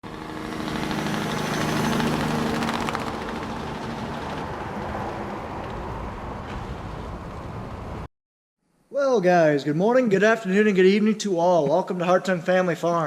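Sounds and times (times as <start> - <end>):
heavy machine engine running: 0.1 - 5.4.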